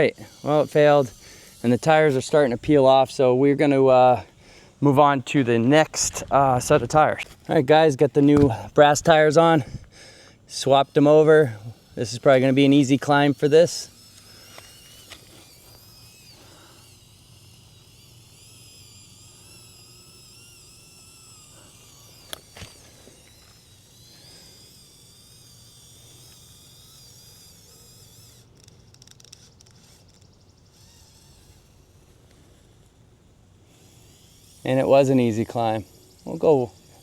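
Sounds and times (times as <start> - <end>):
electric motor whine: 0.0 - 37.0
small crackling ticks: 28.2 - 31.5.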